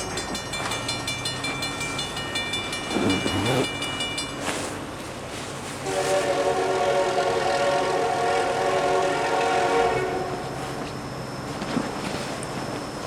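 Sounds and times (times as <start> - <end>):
train rumble: 0.0 - 13.0
locomotive air horn blast: 2.9 - 3.7, 5.8 - 10.5.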